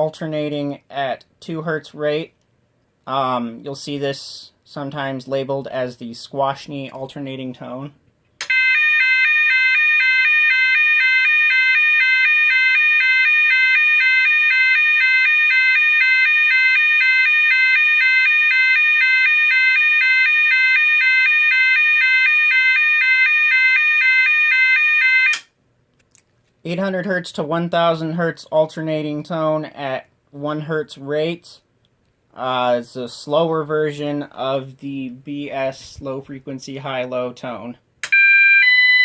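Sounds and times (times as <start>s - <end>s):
alternating two-tone signal: 8.5s - 25.4s.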